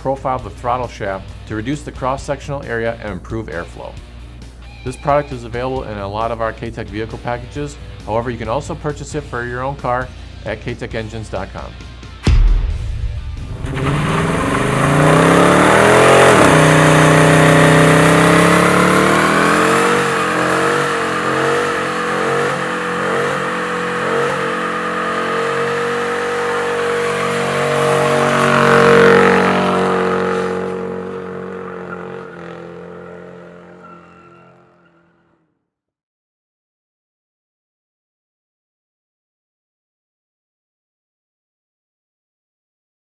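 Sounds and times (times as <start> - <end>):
car engine accelerating hard: 13.0 - 35.2.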